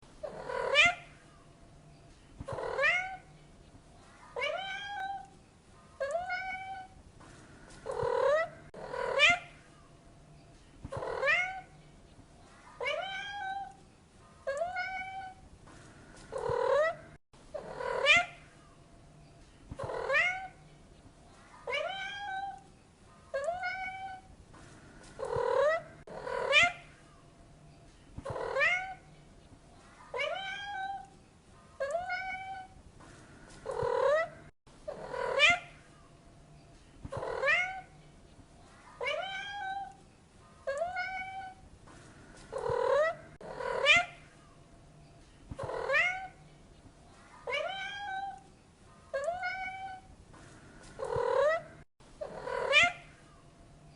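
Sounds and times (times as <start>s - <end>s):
cat meowing: 14.5s - 15.4s, 31.8s - 32.8s, 39.0s - 40.0s, 40.7s - 41.6s, 45.7s - 46.4s, 47.5s - 48.4s, 49.2s - 50.1s.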